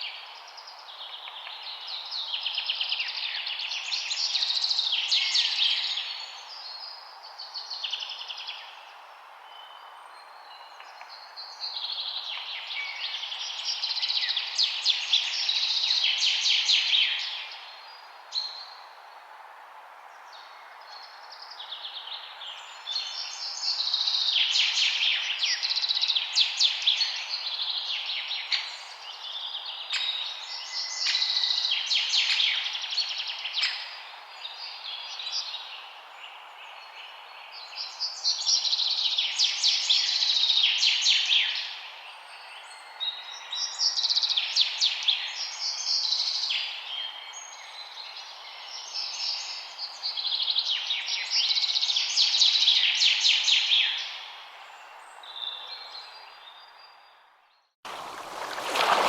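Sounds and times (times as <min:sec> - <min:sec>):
songbirds twittering: 0:20.1 - 0:59.0
background hiss: 0:57.9 - 0:59.0.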